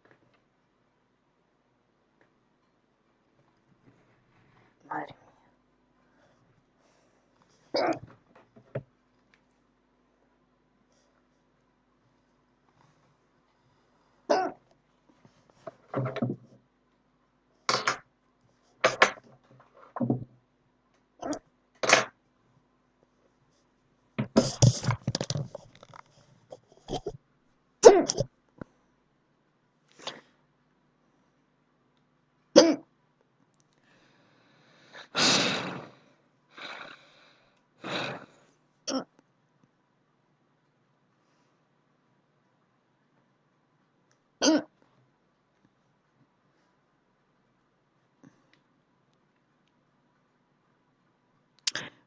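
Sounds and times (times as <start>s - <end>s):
woman hiccuping: 7.8s - 8.1s, 14.3s - 14.6s, 27.8s - 28.3s, 32.5s - 32.9s, 38.9s - 39.1s, 44.4s - 44.8s.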